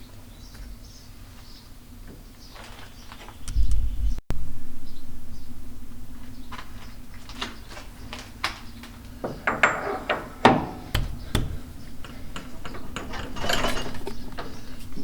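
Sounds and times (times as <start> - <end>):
metallic clinks of tools: 10.8 - 14.5.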